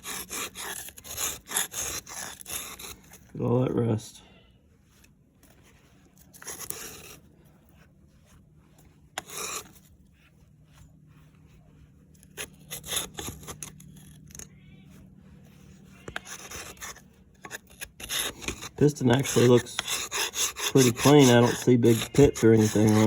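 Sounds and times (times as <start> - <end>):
metal scraper scraping rust: 0.0 - 3.3, 6.2 - 7.2, 9.1 - 9.9, 12.1 - 14.6, 15.5 - 23.0.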